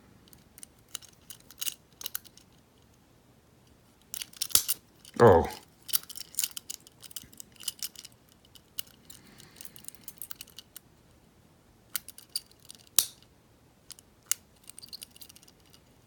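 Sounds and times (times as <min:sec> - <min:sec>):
sharp padlock click: 0:04.3 - 0:04.8, 0:12.9 - 0:13.2
lock pick clicks and scrapes: 0:13.9 - 0:15.8.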